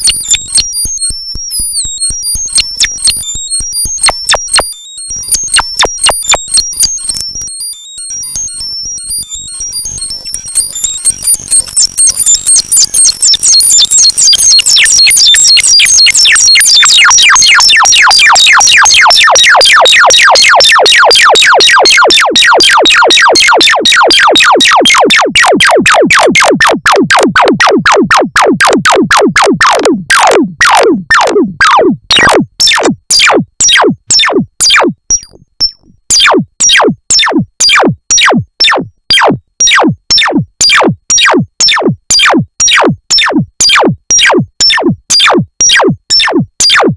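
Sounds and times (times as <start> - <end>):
synthesizer downward pitch sweeps: 22.2 - 34.9.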